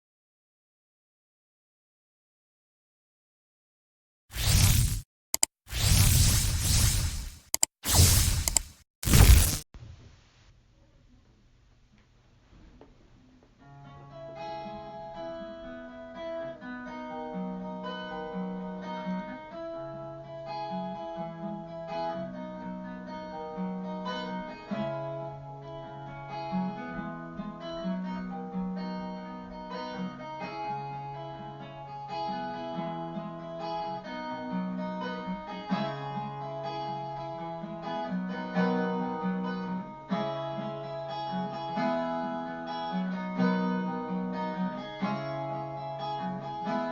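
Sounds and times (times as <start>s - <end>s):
repeating bass line: 4.4s - 9.6s.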